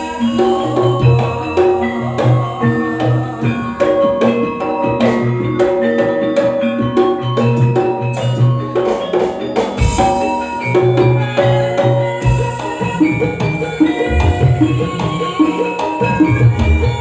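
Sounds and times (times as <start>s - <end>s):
struck melodic notes: 0.0s - 17.0s
steady drum beat: 13.9s - 15.4s.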